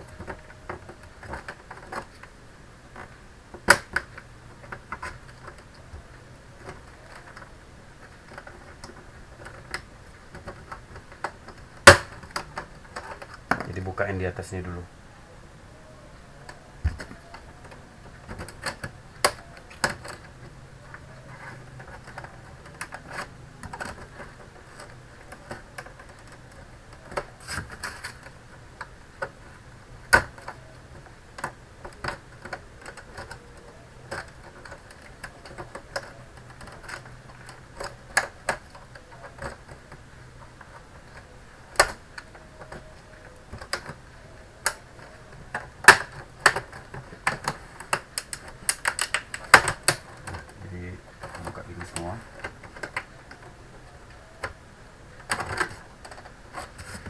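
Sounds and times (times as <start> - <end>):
plastic clips clicking apart: 6.6 - 13.8, 16.4 - 50.6
plastic pops: 11.2 - 12.5, 45.5 - 50.4.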